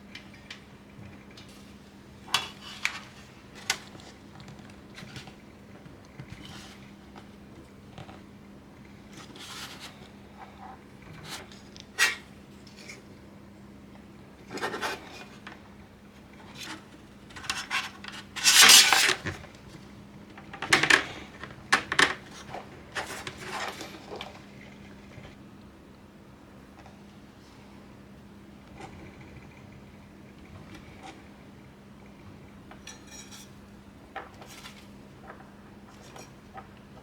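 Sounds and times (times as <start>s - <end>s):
metal scraping rub: 18.4s - 19.2s.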